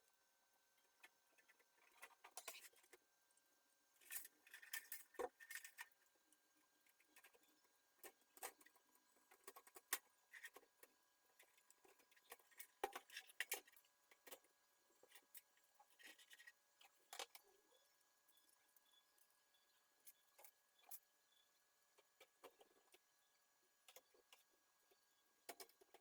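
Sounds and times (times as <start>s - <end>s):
computer parts clicking and tapping: 23.9s - 26.0s.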